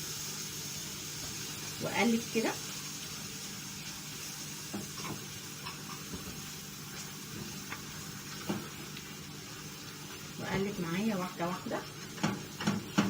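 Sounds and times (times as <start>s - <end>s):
mushrooms sizzling in a pan: 0.0s - 13.0s
spoon scraping a pan: 4.7s - 6.5s.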